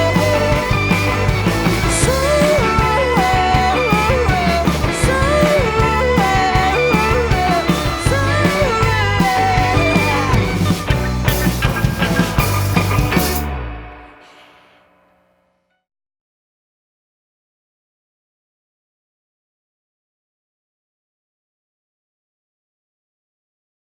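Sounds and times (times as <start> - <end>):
sliding lead guitar melody: 0.0 - 14.3
bass and drums: 0.0 - 14.4.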